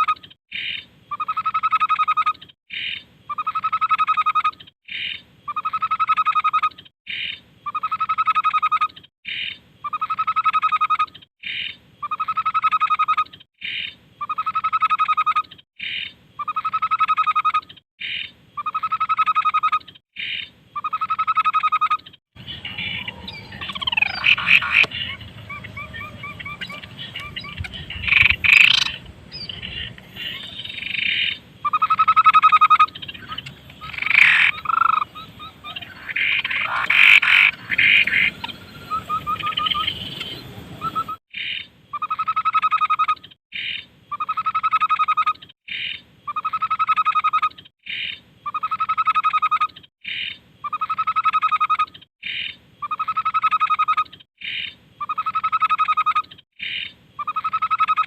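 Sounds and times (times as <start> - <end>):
low hum: 22.4 - 30.7
buzzy pulsed bird note: 22.4 - 31.0
babbler birdsong: 22.4 - 42.1.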